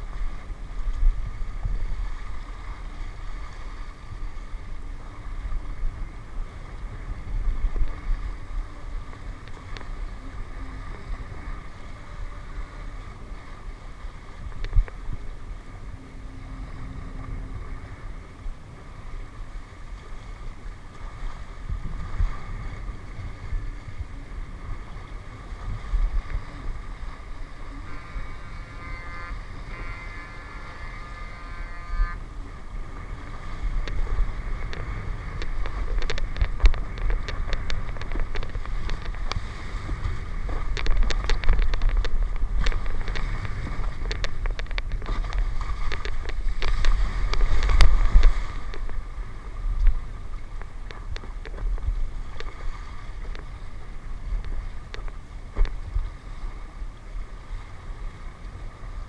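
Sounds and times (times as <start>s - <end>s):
low mechanical hum: 0.0s - 59.0s
wind rumbling on microphone: 0.0s - 59.0s
sharp clicks and knocks: 33.8s - 39.5s, 40.5s - 49.0s.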